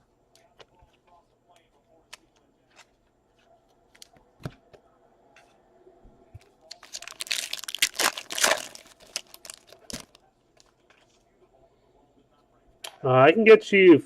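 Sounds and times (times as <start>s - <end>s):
foil wrapper tearing and crinkling: 6.7s - 10.2s.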